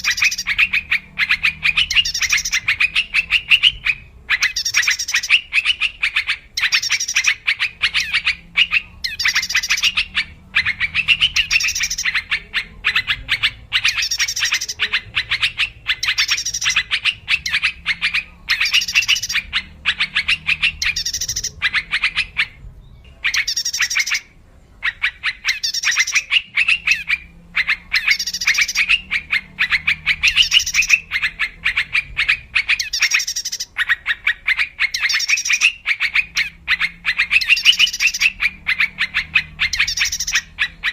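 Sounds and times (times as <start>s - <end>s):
birds chattering calls: 0.0s - 40.9s
faint low hum: 0.0s - 40.9s.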